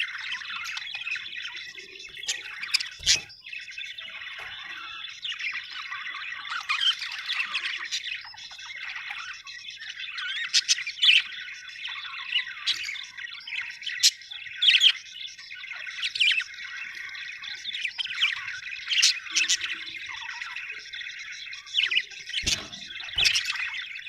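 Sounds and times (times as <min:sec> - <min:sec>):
budgerigars chirping and warbling: 0:00.0 - 0:24.0
sharp squawk-like bird calls: 0:00.0 - 0:24.0.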